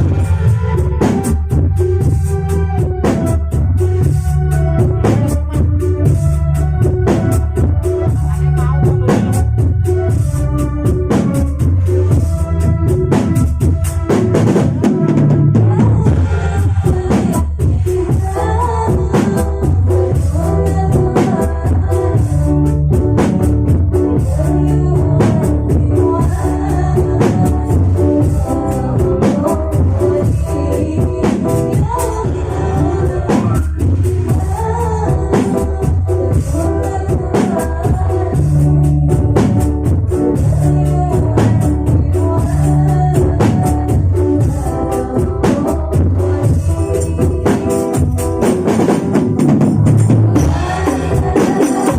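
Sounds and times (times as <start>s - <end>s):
frame drums rhythm: 0.0s - 51.9s
steady low notes: 0.0s - 51.9s
person singing: 15.5s - 23.1s, 23.9s - 48.8s, 50.1s - 51.9s.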